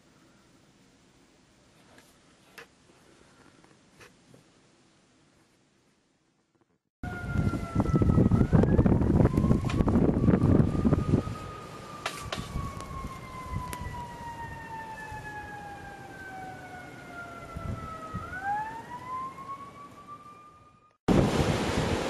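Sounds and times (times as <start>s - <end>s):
wind rumbling on microphone: 7.0s - 15.4s, 17.4s - 18.6s
siren wailing: 7.0s - 21.0s.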